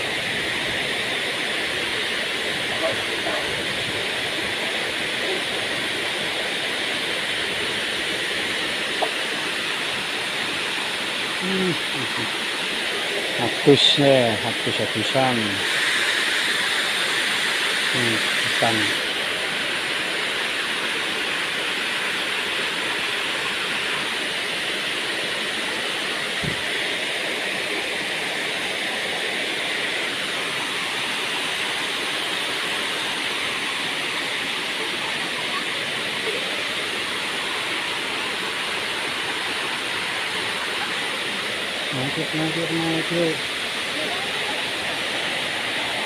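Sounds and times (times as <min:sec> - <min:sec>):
waterfall rushing: 0:00.0 - 0:46.0.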